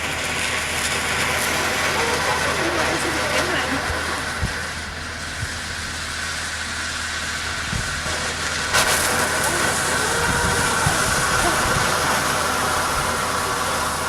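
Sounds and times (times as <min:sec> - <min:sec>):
firework hissing: 0:00.0 - 0:14.0
firework crack: 0:07.7 - 0:14.0.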